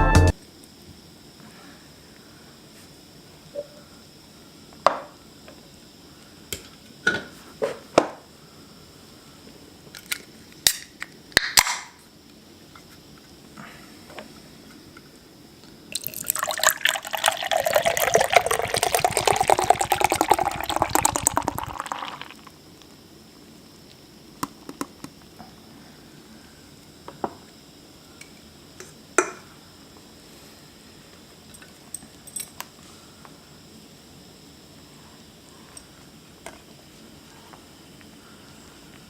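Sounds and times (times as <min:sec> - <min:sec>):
fizzy drink pouring into glass: 0:15.9 - 0:22.6.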